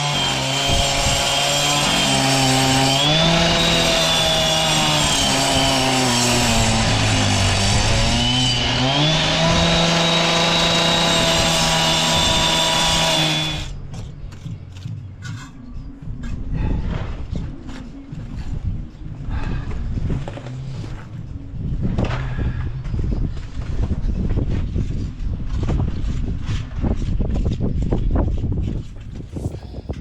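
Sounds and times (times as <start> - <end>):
two-stroke power saw running: 0.0 - 13.7.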